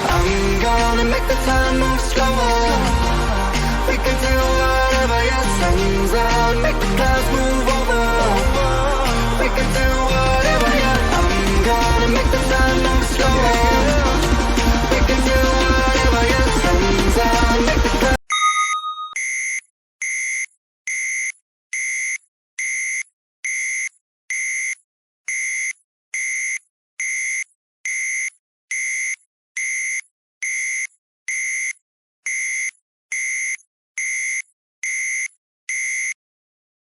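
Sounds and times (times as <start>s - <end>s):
background music: 0.0s - 18.2s
brief ringing tone: 18.3s - 19.6s
timer alarm beeps: 18.3s - 36.2s.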